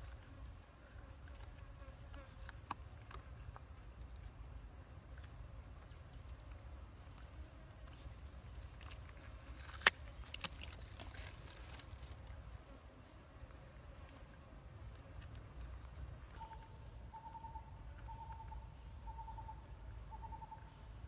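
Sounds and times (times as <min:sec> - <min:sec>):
faint insect-like buzz: 0:00.0 - 0:21.0.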